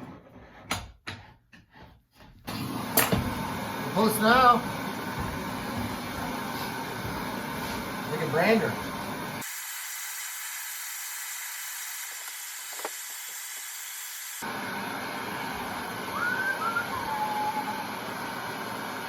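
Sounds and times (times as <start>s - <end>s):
hot branding iron hissing: 2.6s - 14.4s
faint gliding whistle-like tones: 16.1s - 18.2s.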